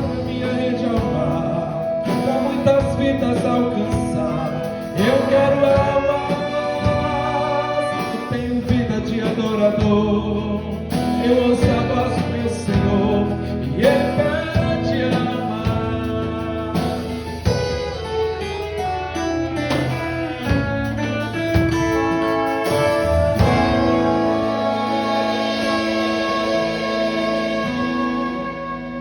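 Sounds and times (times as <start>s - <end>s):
brass and woodwind chords: 0.0s - 9.4s, 16.8s - 29.0s
drum strokes: 0.0s - 29.0s.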